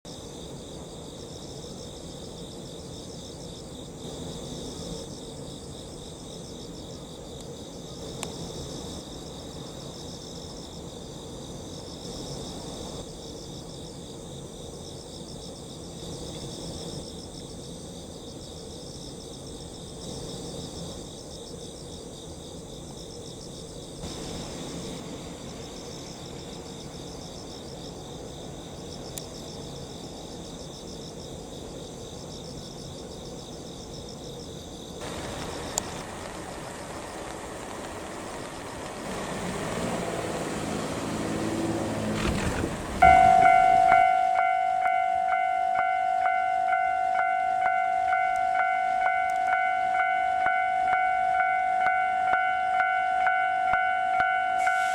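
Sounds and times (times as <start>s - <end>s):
crickets and insects trilling: 0.1s - 54.9s
low steady rumble: 35.0s - 45.2s.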